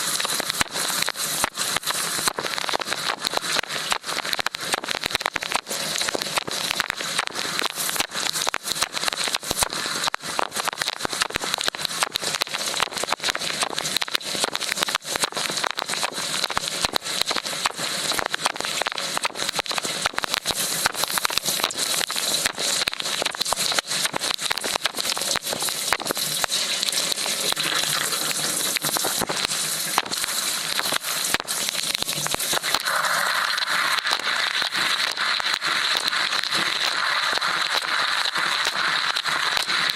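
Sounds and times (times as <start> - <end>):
dishwasher water jets spattering: 0.0 - 5.0, 18.7 - 39.9
steady high whine: 26.0 - 39.6.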